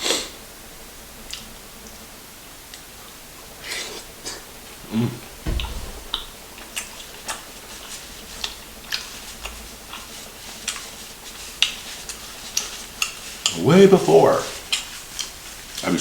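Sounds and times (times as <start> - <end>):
low hum: 5.3 - 6.8
low thump: 5.4 - 6.7.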